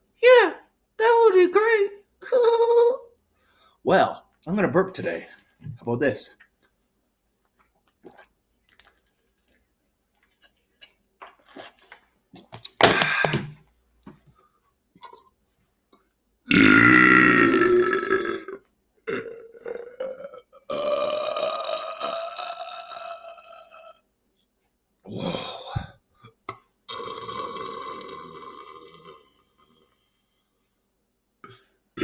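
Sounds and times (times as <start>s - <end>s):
person belching: 16.5s - 24.0s, 25.1s - 29.4s.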